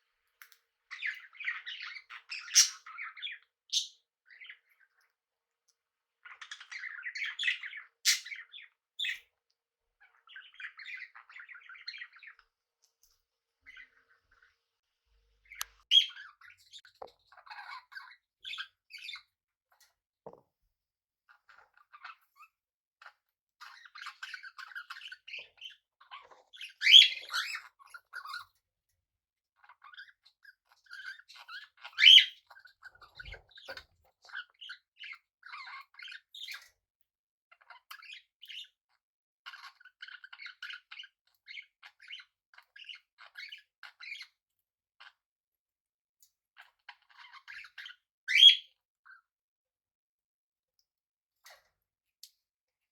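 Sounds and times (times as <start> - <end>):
budgies chirping and chattering: 0.9 - 5.1, 6.2 - 9.4, 10.0 - 13.1, 13.7 - 14.6, 15.4 - 19.4, 21.3 - 28.6, 29.6 - 36.7, 37.5 - 38.9, 39.5 - 44.4, 46.6 - 49.2
loud bird squawks: 26.6 - 27.7, 31.9 - 32.4, 48.3 - 48.6.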